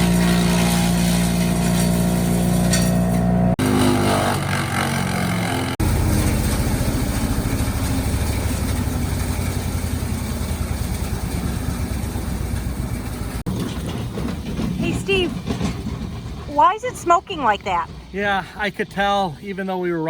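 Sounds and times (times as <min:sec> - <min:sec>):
wood chipper engine running: 0:00.0 - 0:18.6.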